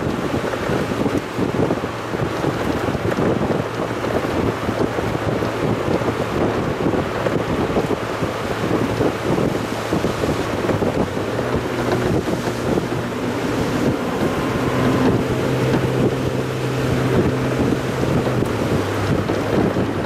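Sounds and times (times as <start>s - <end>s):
car engine hum: 0.0s - 20.0s
wind and road noise: 0.0s - 20.0s.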